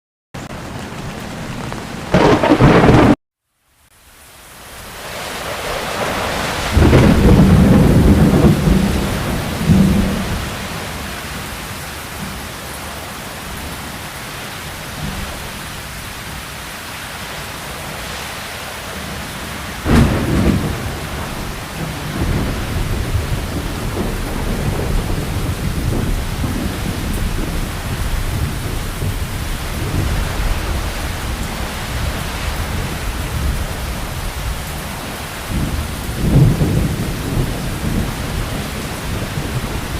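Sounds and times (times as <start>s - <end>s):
heavy rain falling: 0.4s - 3.2s, 3.9s - 39.9s
thunder clap: 1.6s - 3.2s, 6.0s - 10.9s, 19.8s - 33.6s, 35.5s - 39.9s
low rumble of thunder: 2.1s - 3.2s, 6.6s - 10.9s, 19.9s - 34.7s, 35.4s - 39.9s.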